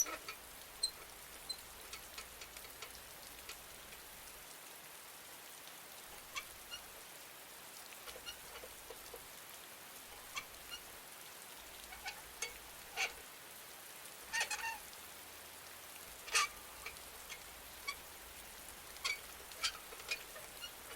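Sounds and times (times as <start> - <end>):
swing hinges squeaking: 0.0 - 1.6
rain falling: 0.0 - 20.9.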